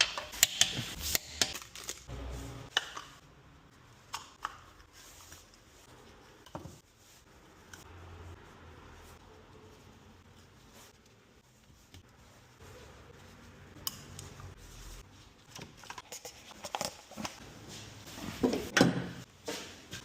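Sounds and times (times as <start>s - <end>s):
tools clicking and knocking: 0.0s - 1.6s.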